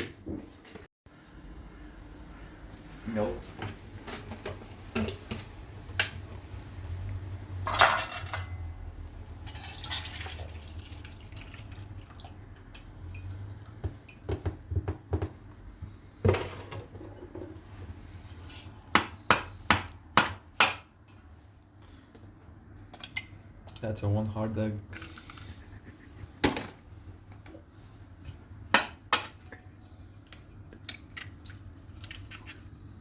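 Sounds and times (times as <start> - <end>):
dishes clattering: 7.7 - 8.6, 16.2 - 17.7
milk pouring into a bowl: 9.5 - 12.4.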